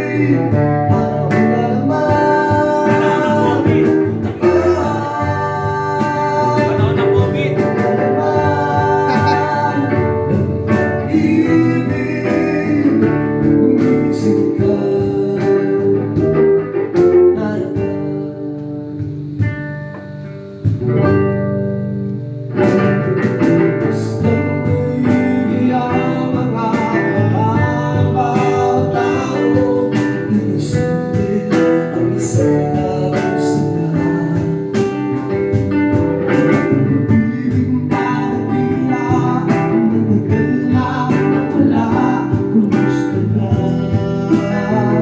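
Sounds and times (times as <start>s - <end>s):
person singing: 0.0s - 19.2s, 23.8s - 45.0s
steady beat: 0.0s - 21.5s, 22.3s - 45.0s
guitar: 0.0s - 45.0s.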